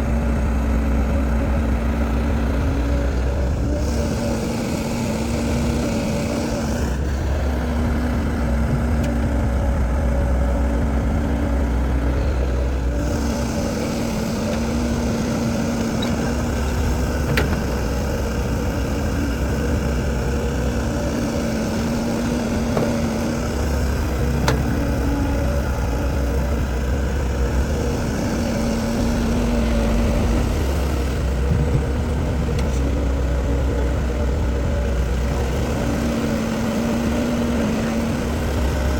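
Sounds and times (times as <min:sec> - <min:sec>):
diesel construction machinery running: 0:00.0 - 0:38.9.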